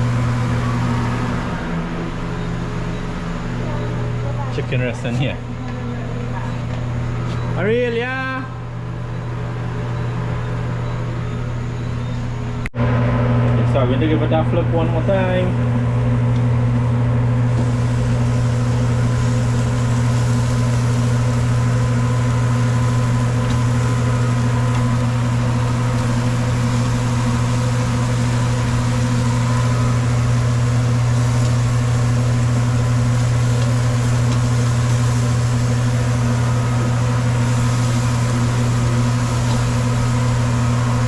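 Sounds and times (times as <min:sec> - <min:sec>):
low machine hum: 0:00.0 - 0:41.0.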